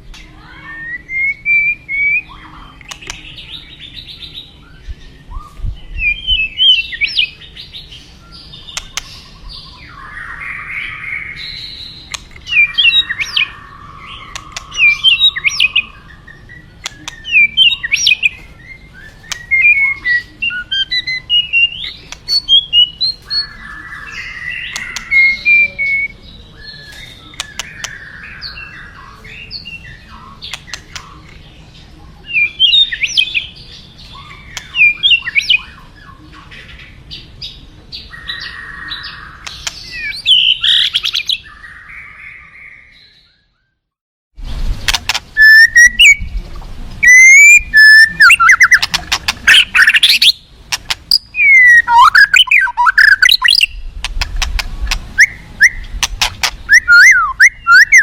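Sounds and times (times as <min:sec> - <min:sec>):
bird singing whistled phrases: 0:00.3 - 0:07.4, 0:12.5 - 0:30.3, 0:45.4 - 0:46.3, 0:47.0 - 0:48.9, 0:49.5 - 0:50.4, 0:51.1 - 0:53.8, 0:55.2 - 0:55.9, 0:56.7 - 0:58.0.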